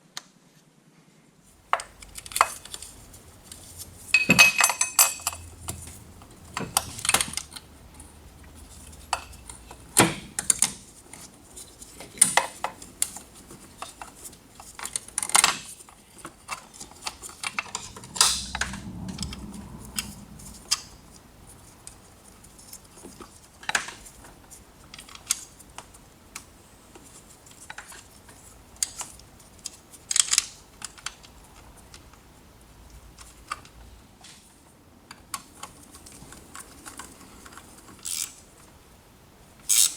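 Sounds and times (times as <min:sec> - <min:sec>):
low rumble: 0:01.6 - 0:10.5, 0:17.2 - 0:22.7.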